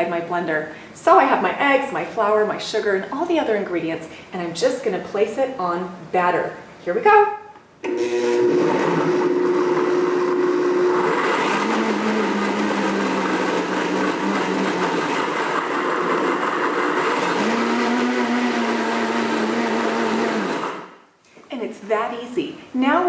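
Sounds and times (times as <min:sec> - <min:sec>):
blender motor running: 0:07.9 - 0:21.0.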